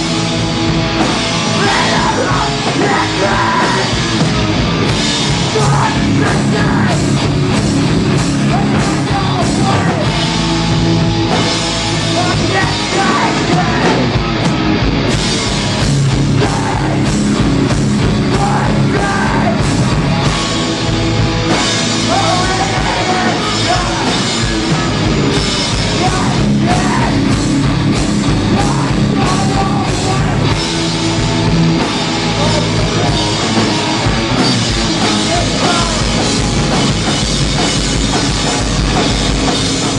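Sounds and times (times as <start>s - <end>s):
bass guitar: 0.0s - 39.9s
distorted guitars: 0.0s - 39.9s
pounding drums: 0.0s - 39.9s
shouted vocals: 1.6s - 4.0s, 5.4s - 7.1s, 8.5s - 10.2s, 12.1s - 14.2s, 16.3s - 17.1s, 18.3s - 19.8s, 22.0s - 24.4s, 25.9s - 27.4s.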